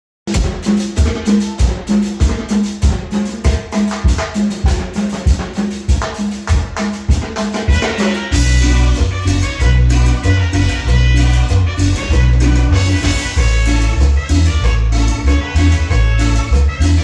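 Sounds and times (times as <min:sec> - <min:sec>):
cumbia band with bass: 0:00.3 - 0:17.0
percussion beat: 0:00.3 - 0:17.0.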